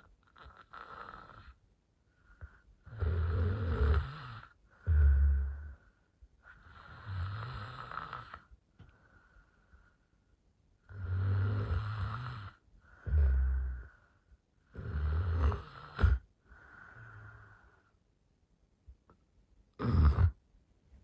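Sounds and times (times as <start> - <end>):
woman snoring: 2.9 - 5.8, 6.8 - 8.3, 10.9 - 13.9, 14.8 - 16.2, 19.8 - 20.4.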